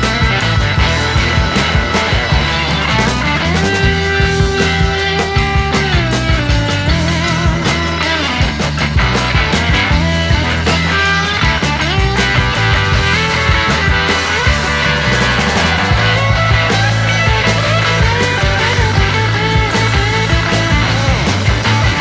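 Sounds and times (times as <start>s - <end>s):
rock music with guitar and bass: 0.0s - 22.0s.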